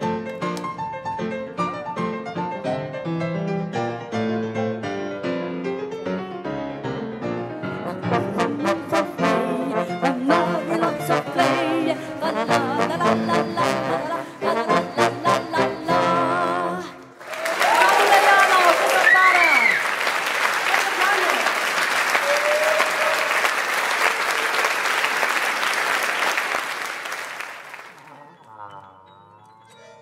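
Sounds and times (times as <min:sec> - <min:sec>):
piano accompaniment: 0:00.0 - 0:17.2
trombones playing: 0:07.7 - 0:17.1.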